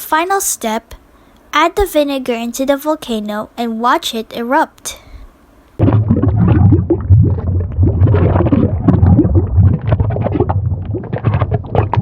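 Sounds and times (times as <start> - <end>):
foaming mixture gurgling and bubbling: 5.8 - 12.0.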